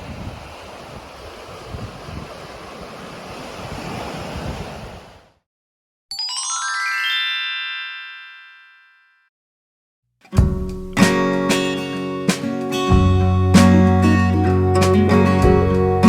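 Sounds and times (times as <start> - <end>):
wind buffeting microphone: 0.0 - 5.3
rising bell-like chime notes: 6.1 - 9.3
surf: 10.4 - 16.0.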